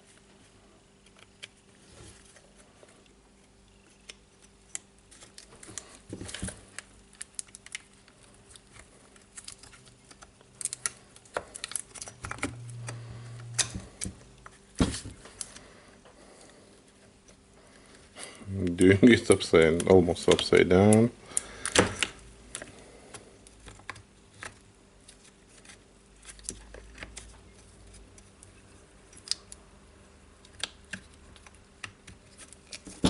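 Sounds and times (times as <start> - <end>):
faint steady hum: 0.0 - 33.0.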